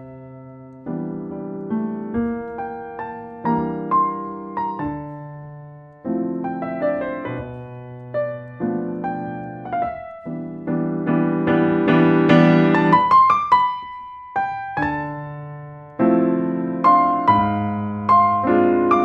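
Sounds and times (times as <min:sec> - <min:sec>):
slow piano piece: 0:00.0 - 0:19.0.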